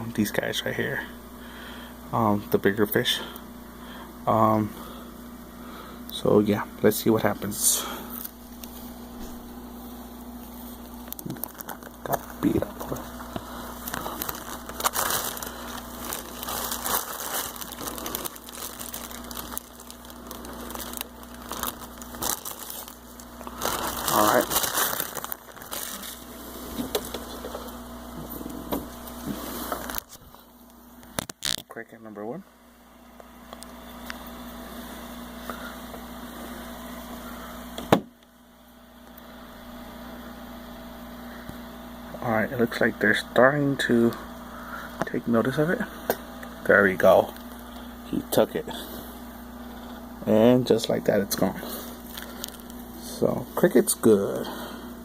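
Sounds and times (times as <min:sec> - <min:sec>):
steady low hum: 0:00.0 - 0:55.0
plastic bag crinkling: 0:10.7 - 0:27.8, 0:28.9 - 0:30.4, 0:31.0 - 0:31.7, 0:51.3 - 0:52.9.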